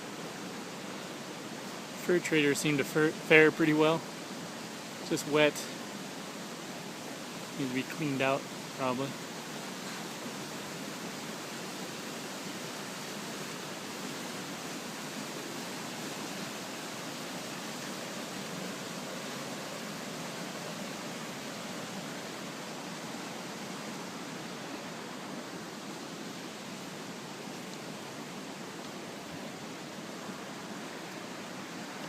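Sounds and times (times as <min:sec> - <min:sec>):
river rushing: 0:00.0 - 0:32.0.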